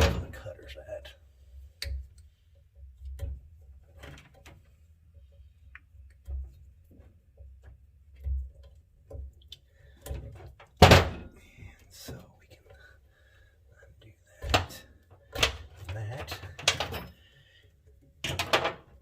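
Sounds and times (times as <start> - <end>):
light clicks and taps of tools: 1.6 - 4.6.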